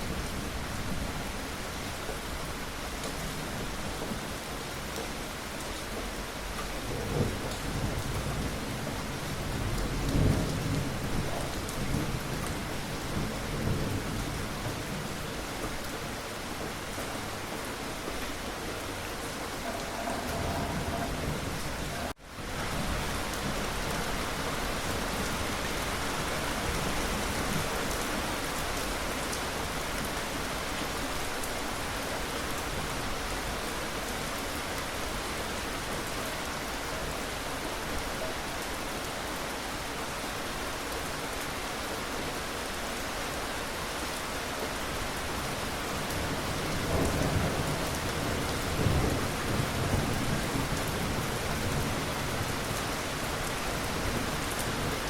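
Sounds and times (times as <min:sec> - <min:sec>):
steady rain hiss: 0:00.0 - 0:55.0
low rumble of thunder: 0:06.6 - 0:15.8, 0:18.9 - 0:28.0, 0:46.0 - 0:55.0.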